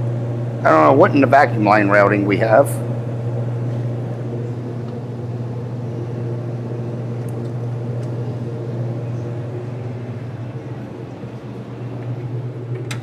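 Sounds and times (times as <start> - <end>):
car engine idling: 10.0 - 13.0.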